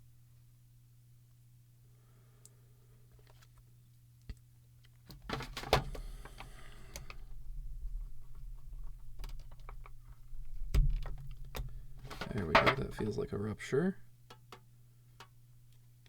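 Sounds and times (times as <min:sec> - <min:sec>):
plastic clicks and scraping: 0:10.8 - 0:13.0.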